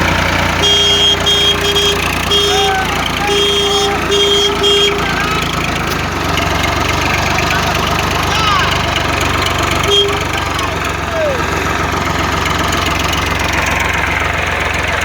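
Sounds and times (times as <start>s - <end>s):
engine idling: 0.0s - 15.0s
beeping tone: 0.6s - 5.6s, 9.8s - 11.4s.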